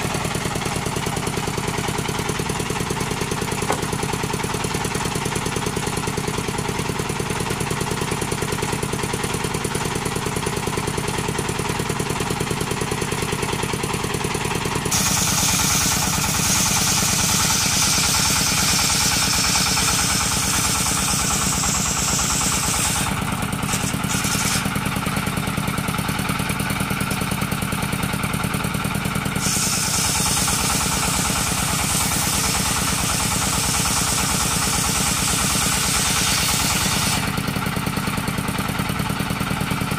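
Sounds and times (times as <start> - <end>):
circular saw running: 0.0 - 39.9
saw blade rasping through wood: 14.9 - 25.2, 29.4 - 37.4.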